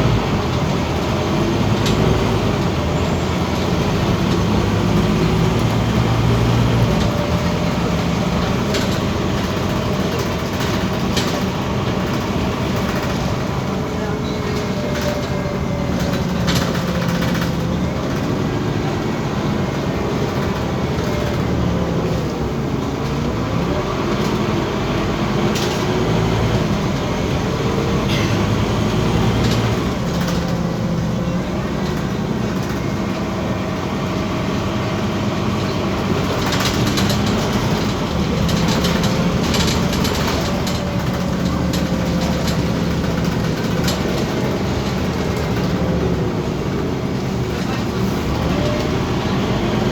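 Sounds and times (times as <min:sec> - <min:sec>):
bus diesel engine accelerating: 0:00.0 - 0:49.9
clicks and rattles: 0:36.3 - 0:46.0.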